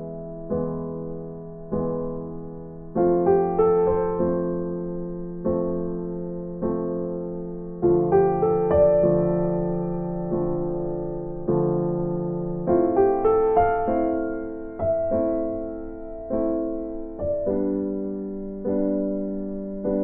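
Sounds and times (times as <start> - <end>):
electric piano chords: 0.0 - 20.0.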